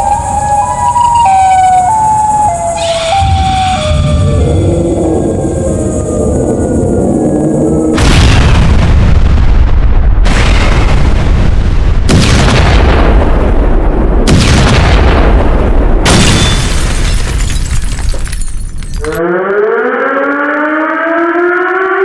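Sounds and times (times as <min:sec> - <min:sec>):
loud booming blasts: 0:07.8 - 0:18.0.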